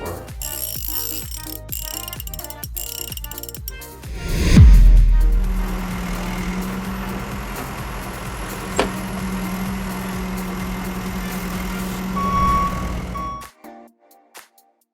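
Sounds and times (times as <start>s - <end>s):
sharp click: 0.4s - 13.2s
low mechanical hum: 4.2s - 13.4s
short high beep: 12.1s - 13.5s.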